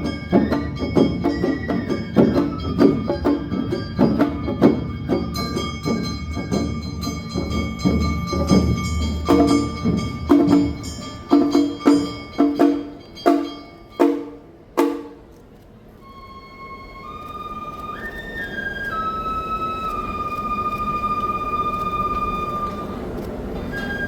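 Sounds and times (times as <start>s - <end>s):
dense drum beat: 0.0s - 15.3s
ringing percussion strikes: 0.0s - 15.3s
sustained melody tones: 0.0s - 15.3s, 16.0s - 24.0s
festival band music: 0.0s - 15.4s, 16.1s - 24.0s.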